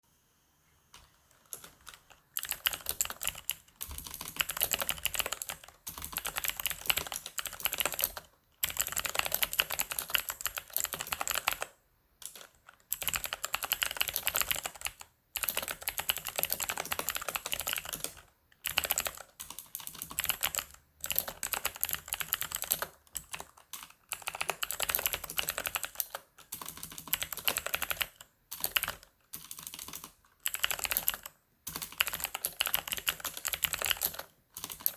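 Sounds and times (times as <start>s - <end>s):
clicky keyboard typing: 1.0s - 34.9s.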